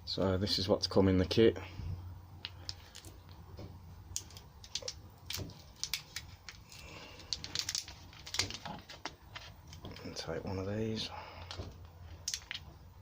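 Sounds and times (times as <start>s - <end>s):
small parts and packaging rattling: 2.4s - 3.4s, 4.1s - 10.4s, 11.3s - 12.8s.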